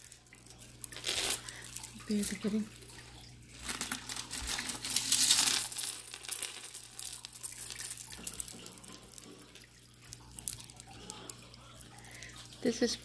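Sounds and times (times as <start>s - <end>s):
jewelry rustling clatter: 0.0s - 2.6s, 3.5s - 13.0s
jewelry pieces clicking together: 10.0s - 12.2s.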